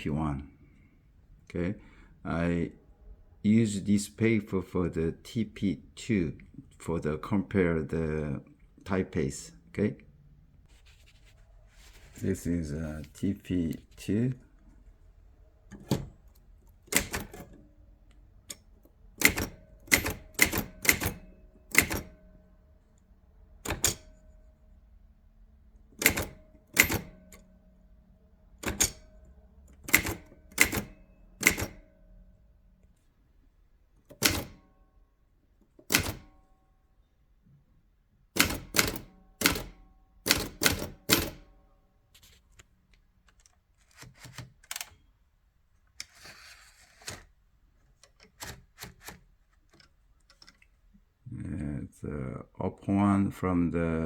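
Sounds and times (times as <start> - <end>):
typewriter keys clacking: 16.9 - 17.6, 19.2 - 22.1, 26.0 - 27.2, 28.6 - 29.0, 29.8 - 31.8, 35.8 - 36.3, 38.4 - 41.4
typewriter ring: 19.2 - 22.2, 23.7 - 24.2, 26.0 - 27.4, 28.6 - 29.2, 29.8 - 32.0, 34.1 - 34.7, 35.8 - 36.5, 38.4 - 41.5.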